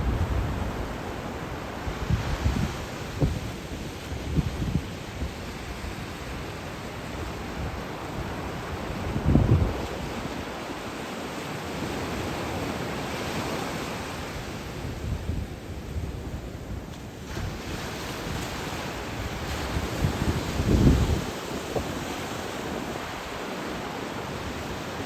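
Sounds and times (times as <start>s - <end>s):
wind buffeting microphone: 0.0s - 10.9s, 14.4s - 23.5s
sea waves washing on shore: 0.0s - 25.0s
steady wind: 0.0s - 25.0s.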